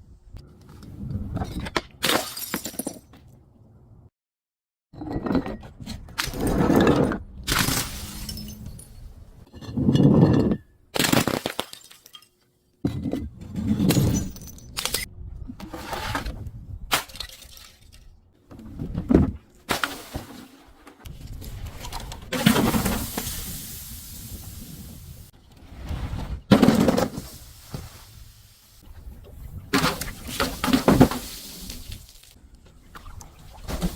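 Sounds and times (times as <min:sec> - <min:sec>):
glass bottles breaking and crushing: 0:02.0 - 0:03.1, 0:07.5 - 0:12.4, 0:13.8 - 0:15.1, 0:17.0 - 0:18.1.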